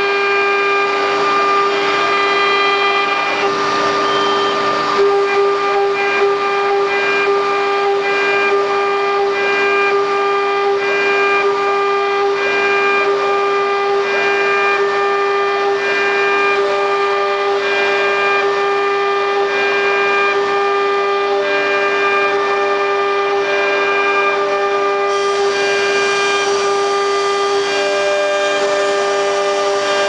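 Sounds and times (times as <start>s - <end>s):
axis motors high tones: 0.0s - 7.4s, 21.7s - 30.0s
router spindle whining: 0.0s - 30.0s.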